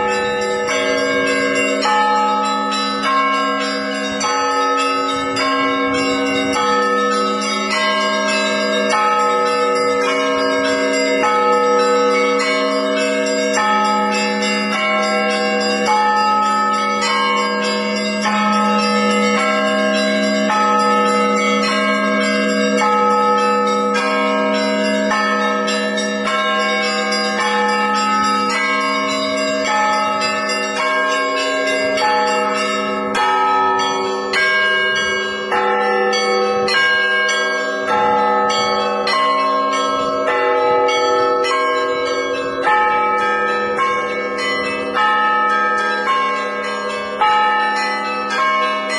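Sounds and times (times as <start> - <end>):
church bells ringing a peal: 0.0 - 48.9.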